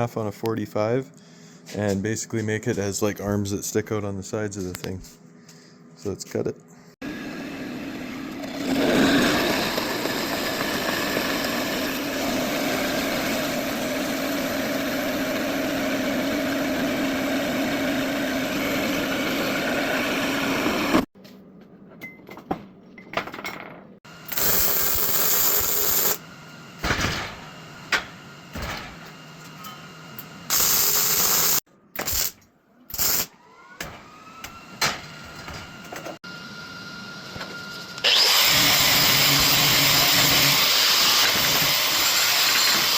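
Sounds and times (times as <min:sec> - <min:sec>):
power tool cutting steel: 0:07.1 - 0:21.1, 0:24.2 - 0:26.2, 0:26.9 - 0:36.0, 0:38.0 - 0:42.9
hissing bursts: 0:24.2 - 0:26.2.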